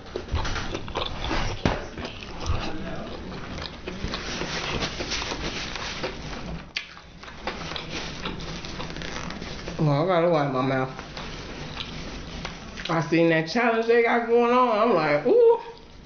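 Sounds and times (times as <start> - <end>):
person chewing with wet mouth sounds: 0.0 - 9.8, 11.0 - 13.0, 15.7 - 16.0.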